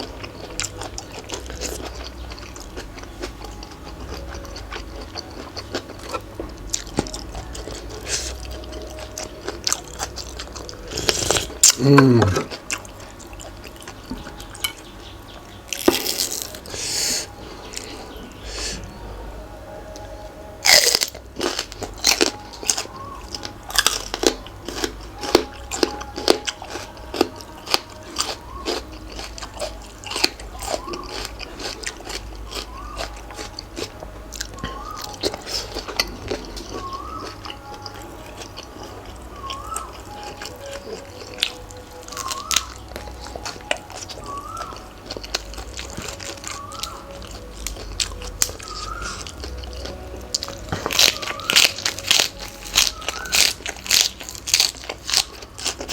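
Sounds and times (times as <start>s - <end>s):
person crunching and chewing: 0.0s - 18.9s, 19.9s - 55.9s
faint rising chirp: 34.2s - 51.6s.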